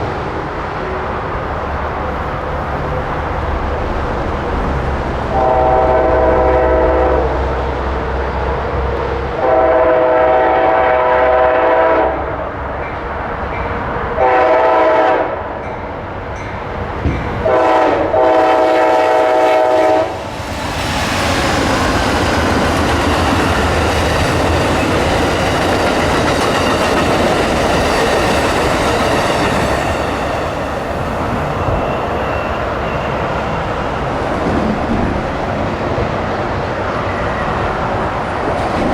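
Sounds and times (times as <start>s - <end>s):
train horn: 5.3s - 7.5s, 9.4s - 12.4s, 14.2s - 15.6s, 17.4s - 20.2s
train wheels clattering on rails: 15.6s - 18.8s, 20.2s - 38.9s.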